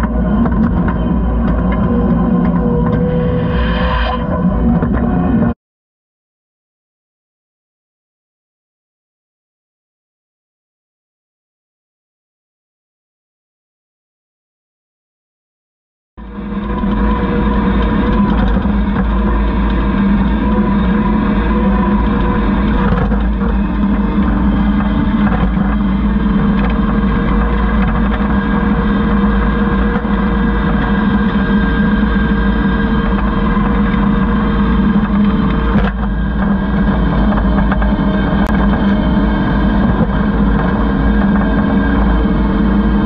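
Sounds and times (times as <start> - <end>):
diesel engine running: 0.0 - 5.6, 16.2 - 43.0.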